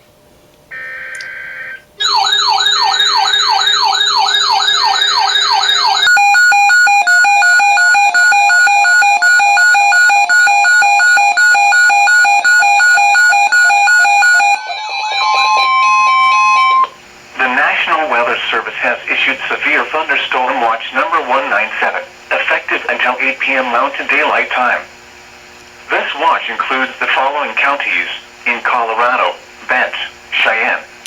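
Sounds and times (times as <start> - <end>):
short electronic tone: 0.7 - 17.0
steady alarm tone: 0.7 - 17.0
warbling siren-like tone: 0.7 - 17.0.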